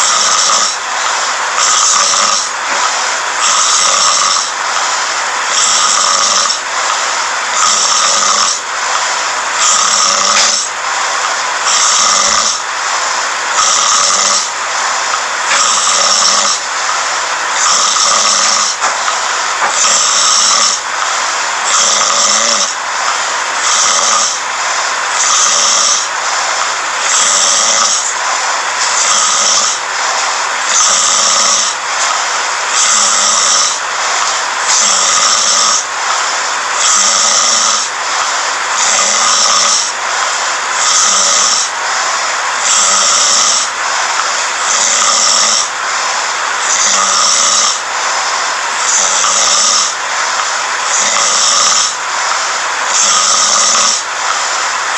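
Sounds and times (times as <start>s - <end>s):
person snoring: 1.6s - 6.7s, 13.2s - 16.8s, 17.5s - 18.8s, 19.4s - 24.4s.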